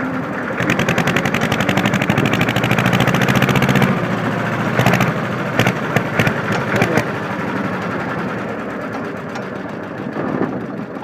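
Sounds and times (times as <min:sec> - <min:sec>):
diesel engine running: 0:00.0 - 0:11.0
sharp exhaust cracks: 0:04.7 - 0:07.2.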